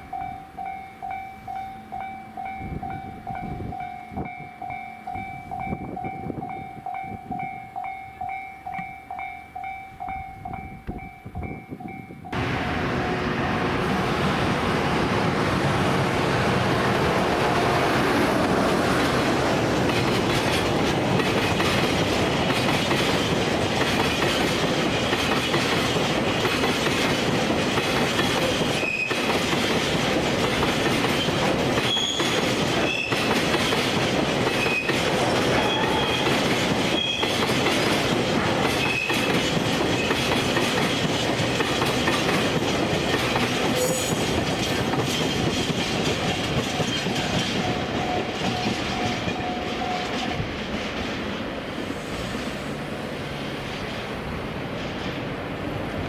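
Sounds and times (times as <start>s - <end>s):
train wheels rumbling on rails: 0.0s - 56.0s
clickety-clack over rail joints: 16.8s - 52.6s
high wheel squeals: 28.8s - 29.3s, 31.2s - 33.4s, 34.6s - 37.4s.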